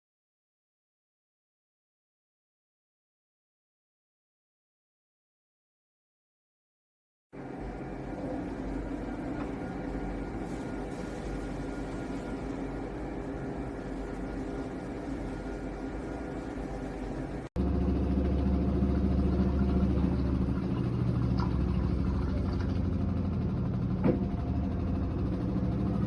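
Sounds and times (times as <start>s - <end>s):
washing machine running: 7.4s - 26.0s.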